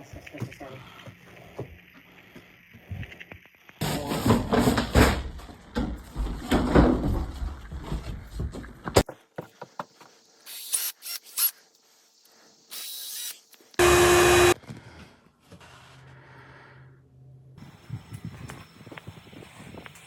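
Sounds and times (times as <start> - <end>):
short hissing bursts: 10.2 - 13.5.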